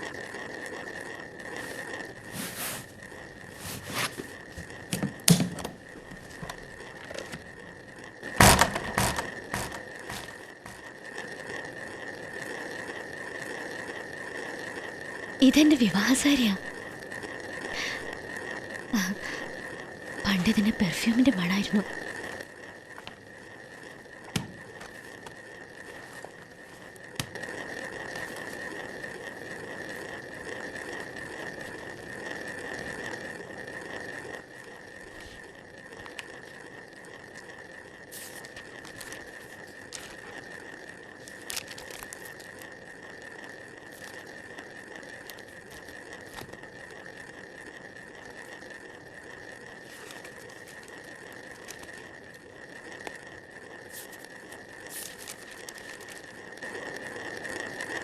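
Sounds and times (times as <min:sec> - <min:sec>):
soft rustling: 0:01.4 - 0:04.8
faint high-pitched hum: 0:02.8 - 0:58.0.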